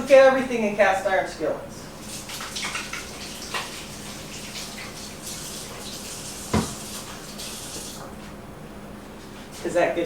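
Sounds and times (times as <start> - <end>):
tap water splashing into sink: 2.0 - 8.1.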